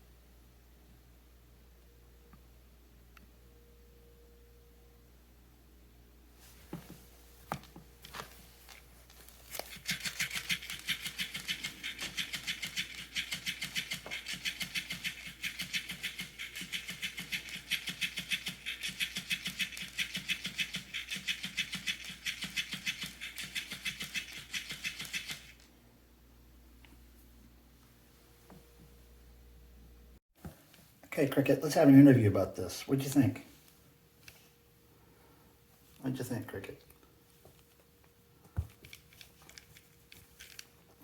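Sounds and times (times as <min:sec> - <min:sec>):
toy motor rattling: 0:09.5 - 0:25.7
toy clicks: 0:09.6 - 0:25.7.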